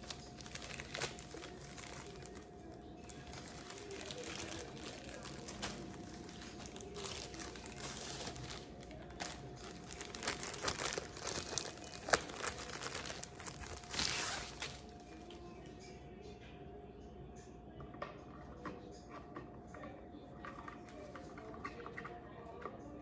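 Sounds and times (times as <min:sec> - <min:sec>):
packaging crinkling and rustling: 0:00.0 - 0:15.3.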